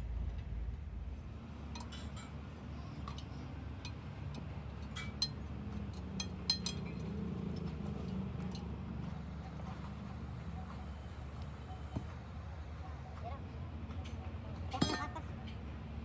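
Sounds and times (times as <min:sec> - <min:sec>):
low steady hum: 0:00.0 - 0:16.0
metal tools clinking: 0:04.8 - 0:07.2, 0:14.8 - 0:15.2.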